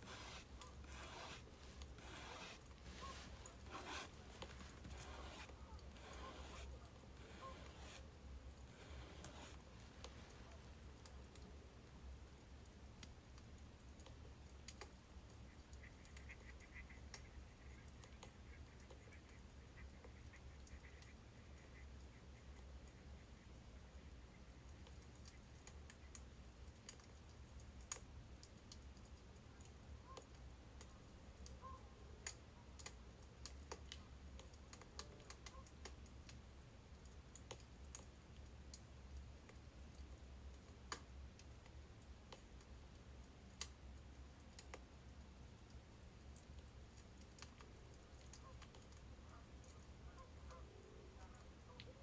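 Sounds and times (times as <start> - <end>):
wood fire crackling: 0.0 - 11.8.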